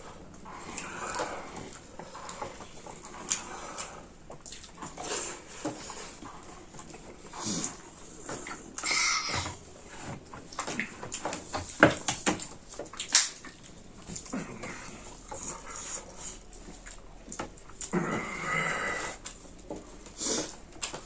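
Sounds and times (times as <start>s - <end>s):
food crunching: 0.0s - 8.9s, 12.3s - 18.4s
chewing and lip smacks: 3.2s - 5.1s, 12.4s - 18.0s.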